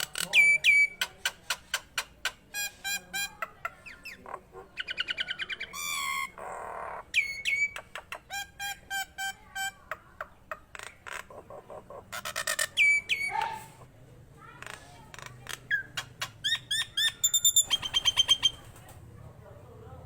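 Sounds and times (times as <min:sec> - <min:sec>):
myna singing clicks and whistles: 0:00.0 - 0:03.3, 0:07.2 - 0:09.1, 0:12.4 - 0:13.7, 0:15.6 - 0:18.7.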